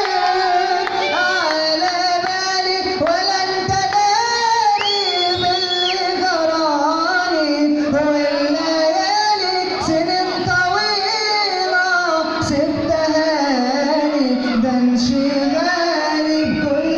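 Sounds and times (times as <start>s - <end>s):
man singing: 0.0s - 16.9s.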